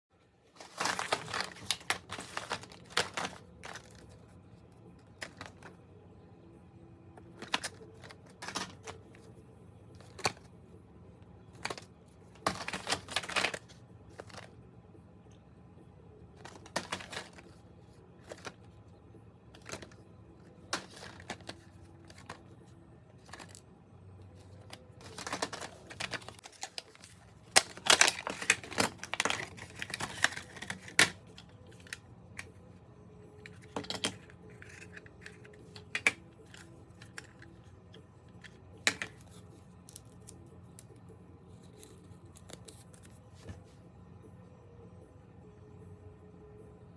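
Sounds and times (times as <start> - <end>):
packaging rustling: 0.5 - 4.2, 11.6 - 14.5, 16.4 - 17.6, 20.7 - 22.5, 23.2 - 23.6, 24.5 - 32.0.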